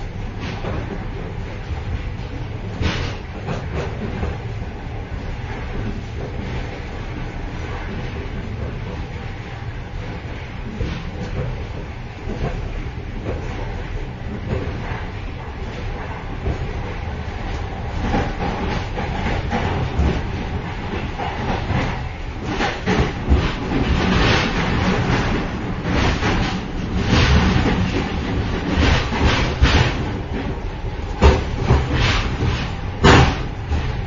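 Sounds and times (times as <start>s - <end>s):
train wheels rumbling on rail: 0.0s - 34.0s
metallic clattering and knocks: 18.0s - 34.0s.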